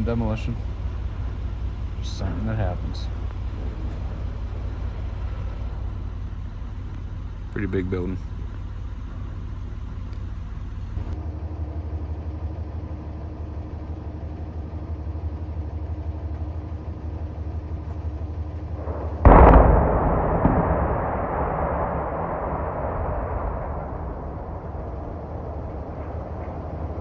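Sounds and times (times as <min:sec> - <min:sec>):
demolition blast rumbling: 0:00.0 - 0:11.2, 0:18.8 - 0:27.0
low steady hum: 0:00.0 - 0:11.2, 0:18.8 - 0:26.3.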